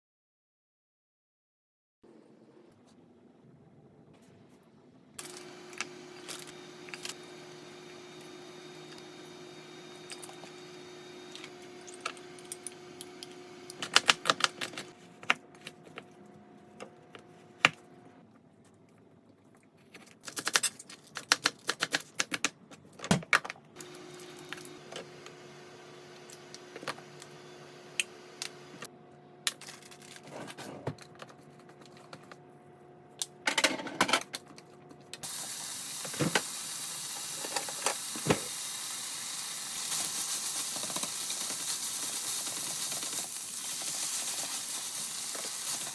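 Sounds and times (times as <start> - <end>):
food sizzling in hot pan: 35.2 - 45.9.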